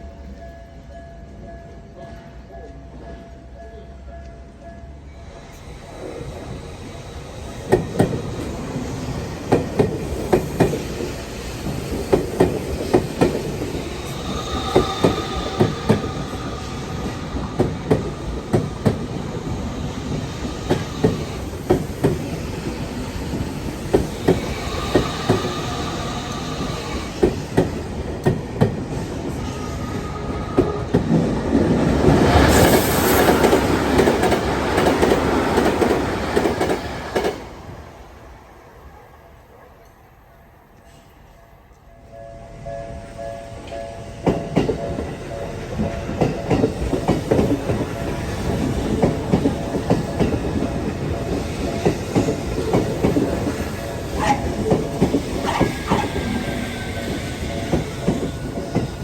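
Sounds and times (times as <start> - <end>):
rushing train noise: 0.0 - 59.0
train wheels clacking on rail joints: 7.5 - 37.4, 43.6 - 59.0
high wheel squeals: 13.7 - 18.8.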